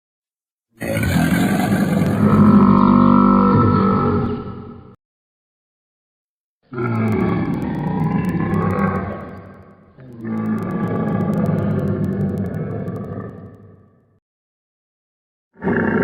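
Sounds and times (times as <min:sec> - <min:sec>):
creature deep roars: 0:00.8 - 0:05.0, 0:06.7 - 0:13.7, 0:15.6 - 0:16.0.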